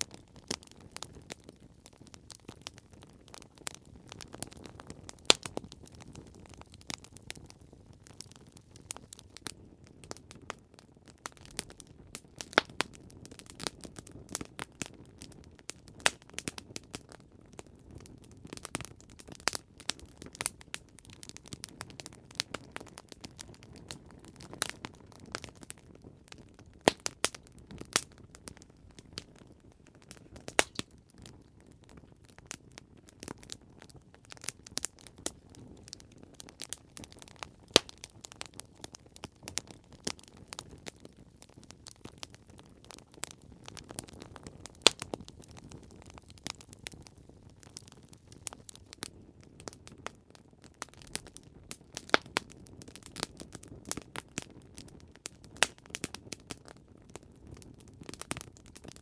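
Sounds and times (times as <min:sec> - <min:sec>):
low rush of flames: 0:00.0 - 0:50.4
wood fire crackling: 0:00.0 - 0:59.0.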